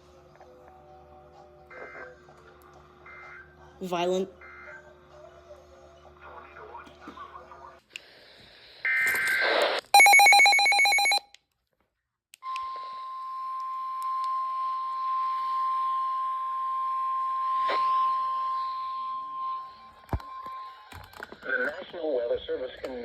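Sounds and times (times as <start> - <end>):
rapid pulsing beep: 10.0 - 11.2
steady warning alarm tone: 10.0 - 11.2.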